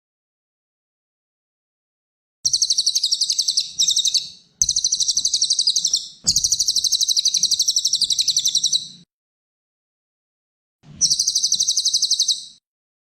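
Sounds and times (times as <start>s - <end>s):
songbird singing rapid trills: 2.5s - 8.9s, 11.0s - 12.6s.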